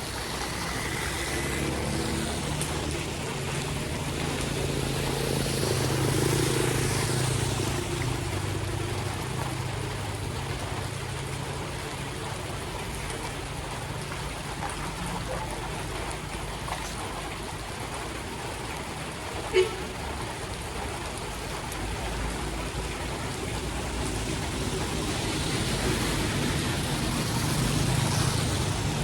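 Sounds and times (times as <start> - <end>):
floodwater running on a street: 0.0 - 29.0
rain: 0.0 - 29.0
vehicle engine passing: 0.1 - 9.6.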